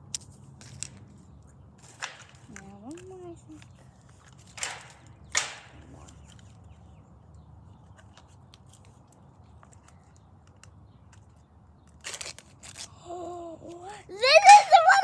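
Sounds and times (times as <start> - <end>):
small plastic clicks: 1.8 - 6.8
wrapping crinkling: 8.0 - 12.9.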